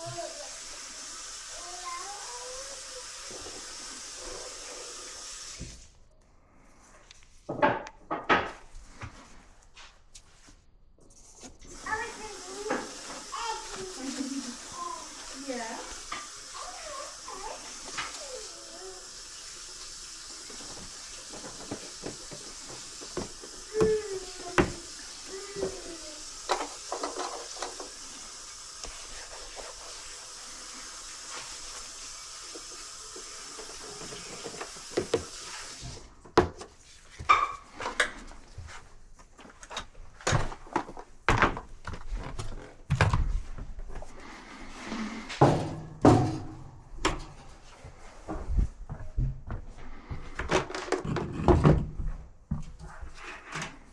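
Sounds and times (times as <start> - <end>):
hard objects knocking and clattering: 20.7 - 25.0, 36.3 - 38.0, 50.4 - 52.0.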